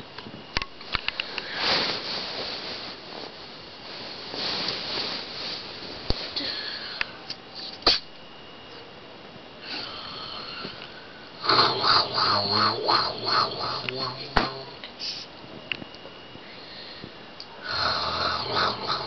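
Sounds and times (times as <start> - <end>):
girl snoring breaths: 11.4 - 14.8, 16.4 - 19.0
person speaking: 11.4 - 15.3.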